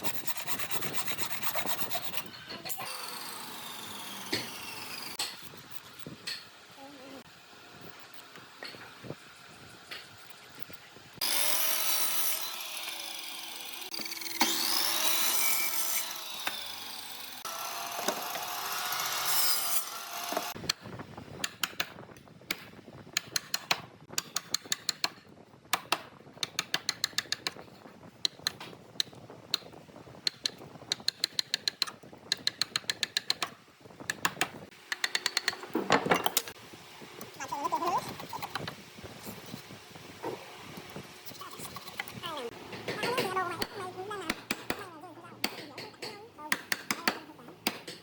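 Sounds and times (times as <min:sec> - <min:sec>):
power tool cutting wood: 0:01.4 - 0:05.2, 0:11.2 - 0:20.6.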